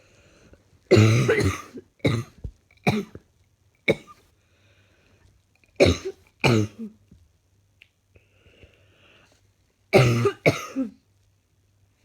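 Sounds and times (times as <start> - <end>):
woman coughing: 0.9 - 2.3, 5.8 - 6.9, 10.0 - 10.9.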